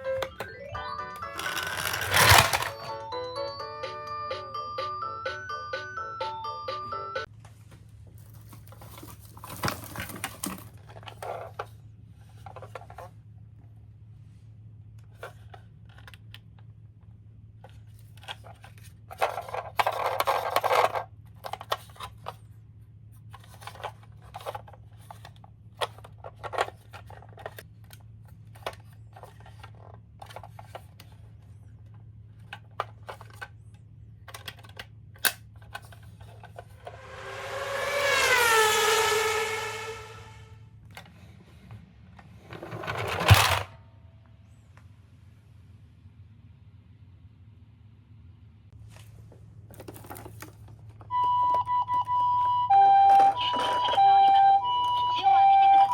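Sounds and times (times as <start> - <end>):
toy cars rolling: 0.0 - 3.3, 8.2 - 13.1, 17.8 - 22.5, 23.2 - 31.4, 35.6 - 40.5, 42.3 - 43.7, 49.7 - 55.9
toy cars clicking and knocking: 1.2 - 2.9, 17.8 - 22.4, 34.2 - 36.6, 52.7 - 55.9.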